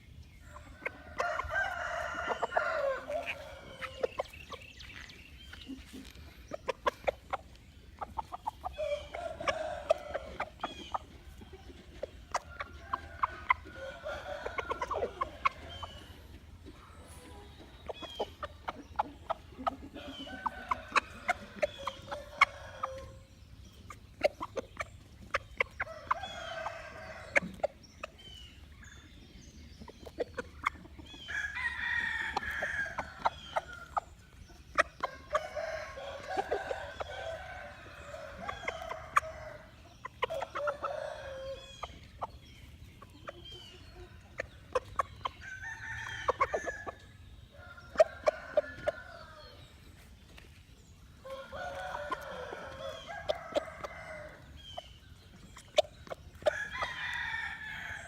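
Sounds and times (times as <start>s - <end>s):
chickens clucking: 0.0s - 58.0s
rooster crowing: 1.2s - 4.1s, 31.3s - 32.9s.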